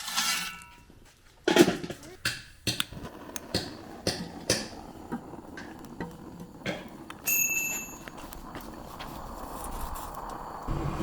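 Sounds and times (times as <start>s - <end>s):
high metallic ring: 7.2s - 8.1s.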